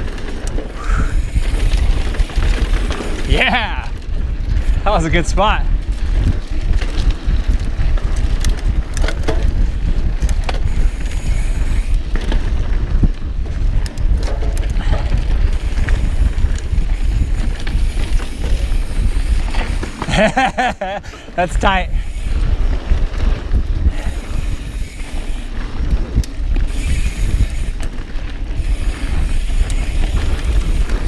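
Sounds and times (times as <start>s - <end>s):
bike rattling: 0.0s - 31.0s
tyres rolling over dirt: 0.0s - 31.0s
wind rumble on microphone: 0.0s - 31.0s.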